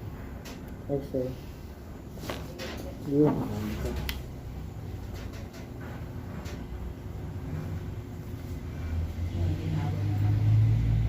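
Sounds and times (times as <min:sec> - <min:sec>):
low engine-like rumble: 0:03.4 - 0:11.0.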